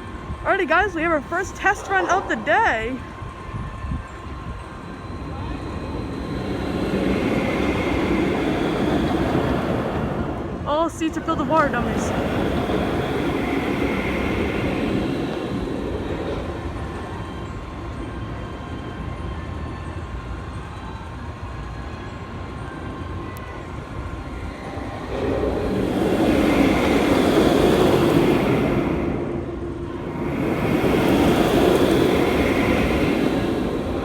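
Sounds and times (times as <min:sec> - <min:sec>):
roller coaster rumbling on track: 0:00.0 - 0:34.0.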